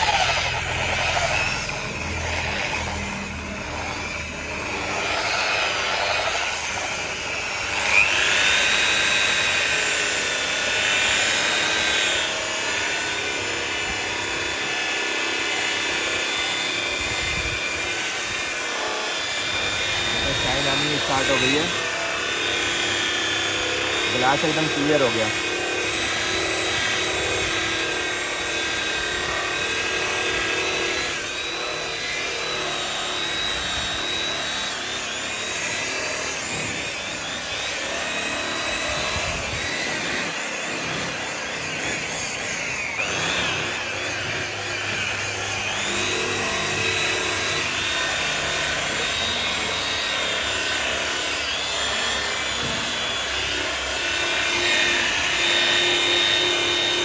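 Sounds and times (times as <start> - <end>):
power tool buffing plastic: 0.0 - 57.0.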